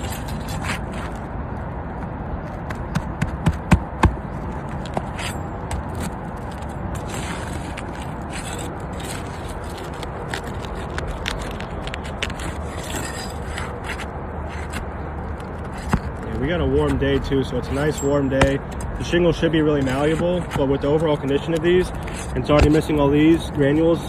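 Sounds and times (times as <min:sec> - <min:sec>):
hand tool scraping shingles: 0:06.0 - 0:14.9, 0:16.9 - 0:24.0.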